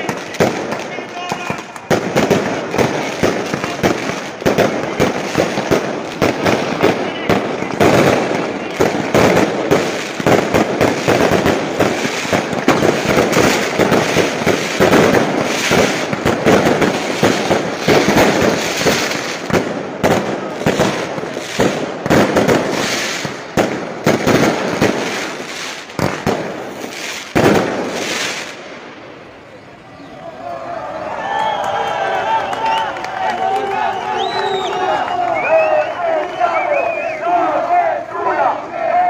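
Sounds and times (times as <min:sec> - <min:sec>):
fireworks bangs and crackles: 0:00.0 - 0:29.6.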